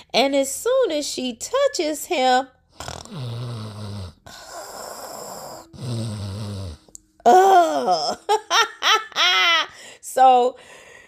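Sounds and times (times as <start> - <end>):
person snoring: 2.8 - 6.9
woman groaning: 7.2 - 8.3.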